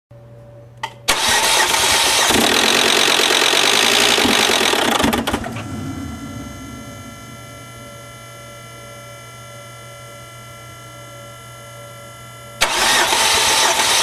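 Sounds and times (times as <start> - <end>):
steady whirring whine: 0.2 - 13.9
car starter cranking engine: 1.1 - 6.0, 12.6 - 14.0.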